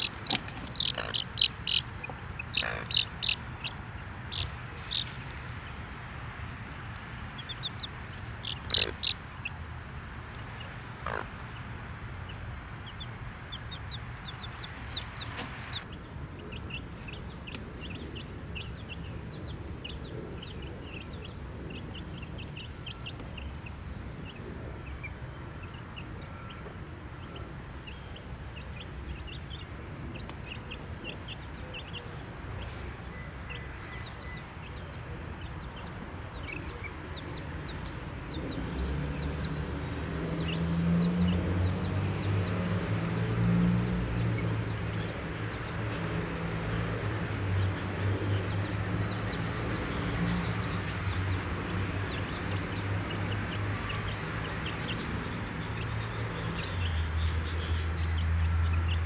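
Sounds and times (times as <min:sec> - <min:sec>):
chicks peeping: 0:00.0 - 0:09.7, 0:10.3 - 0:25.8, 0:43.8 - 0:57.0
steady low rumble: 0:00.0 - 0:10.7.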